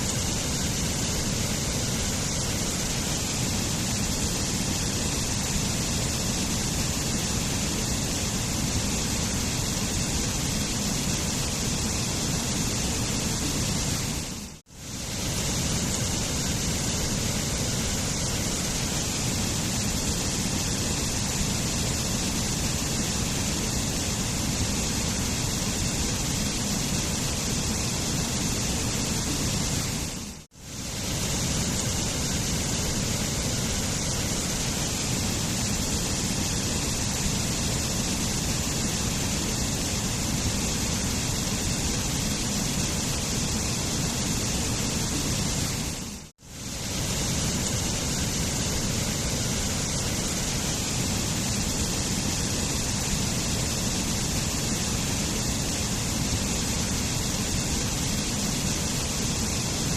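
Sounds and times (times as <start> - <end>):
waterfall hissing: 0.0 - 59.9.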